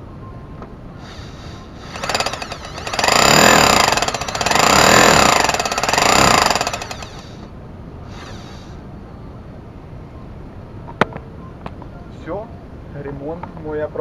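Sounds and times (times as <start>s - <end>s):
rotary hammer chattering: 1.8s - 7.4s.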